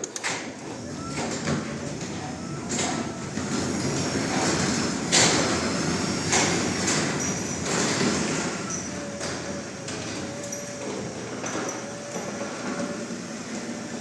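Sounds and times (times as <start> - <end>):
door rolling along tracks: 0.0 - 14.0
garage door opener running: 0.0 - 14.0
sharp clacks and rattles: 1.1 - 10.7.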